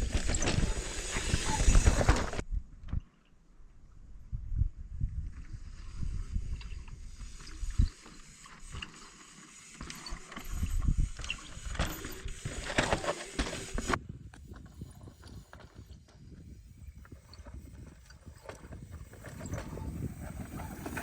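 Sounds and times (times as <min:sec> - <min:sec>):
bike rattling over rocks: 0:00.0 - 0:02.4, 0:17.0 - 0:21.0.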